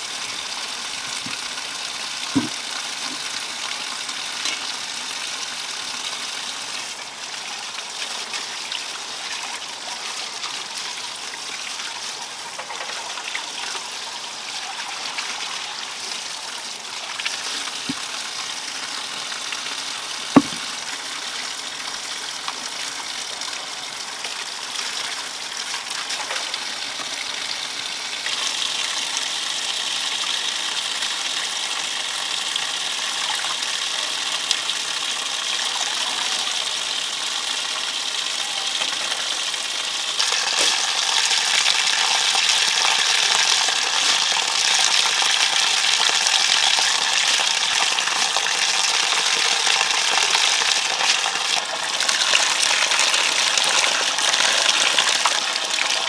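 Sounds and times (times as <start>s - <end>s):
rushing water: 0.0s - 3.6s, 40.2s - 56.0s.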